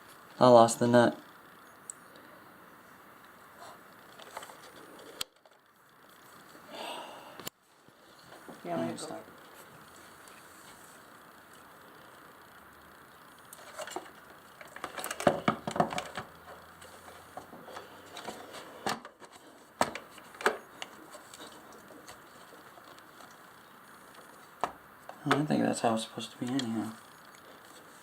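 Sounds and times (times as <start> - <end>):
light clicking and clattering of parts: 3.2 - 6.6, 13.3 - 28.0.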